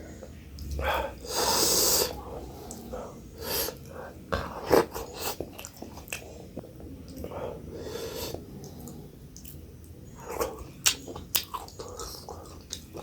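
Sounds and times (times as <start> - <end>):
smacking chewing noises: 10.2 - 13.0.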